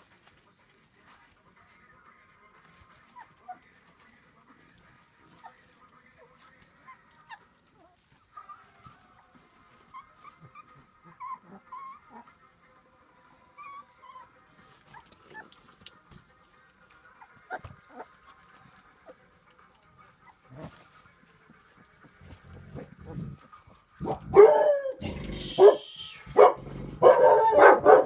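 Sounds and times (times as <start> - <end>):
puppies whimpering and squeaking: 2.6 - 12.4, 13.3 - 15.8, 16.8 - 23.5.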